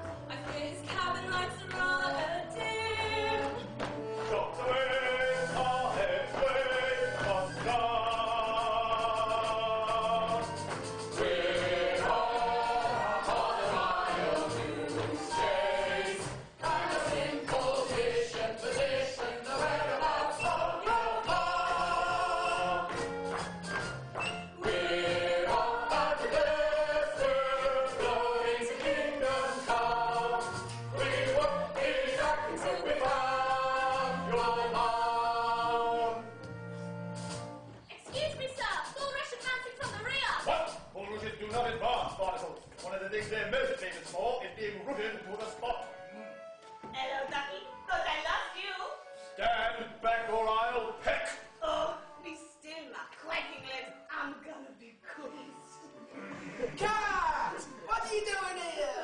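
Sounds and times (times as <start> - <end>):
instrumental accompaniment: 0.0 - 56.8
chorus singing: 2.0 - 36.8, 49.3 - 52.1.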